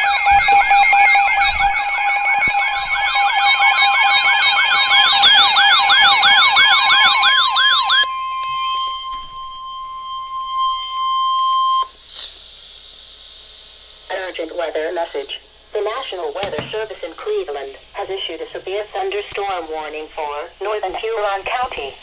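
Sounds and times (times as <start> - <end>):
steady attention tone: 0.0 - 5.6
siren-like warbling alert tone: 0.0 - 11.8.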